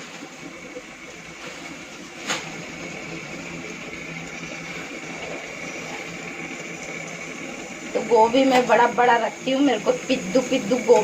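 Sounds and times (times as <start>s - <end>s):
mechanical hum with high whine: 0.0s - 11.0s.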